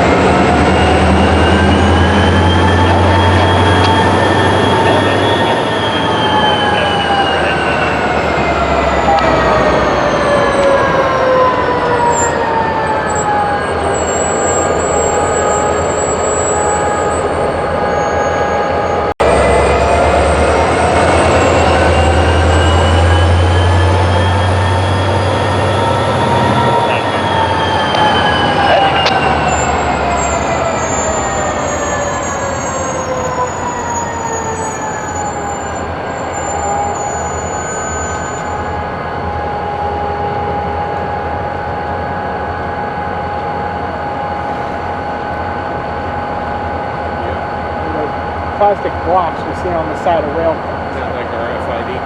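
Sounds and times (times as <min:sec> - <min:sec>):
low rumble of moving rail cars: 0:00.0 - 0:52.0
steel wheels squealing: 0:00.2 - 0:11.0, 0:11.9 - 0:38.8.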